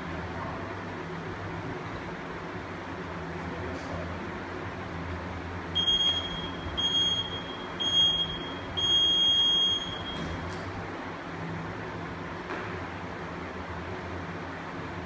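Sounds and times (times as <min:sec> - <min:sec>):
steady background hum: 0:00.0 - 0:15.0
workout timer beeps: 0:05.8 - 0:10.4.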